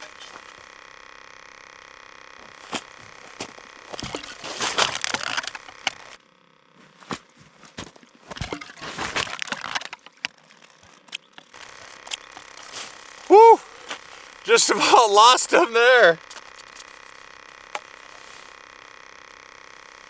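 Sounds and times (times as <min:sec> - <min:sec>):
crackling scraping handling noises: 0:00.0 - 0:06.2, 0:16.2 - 0:20.0.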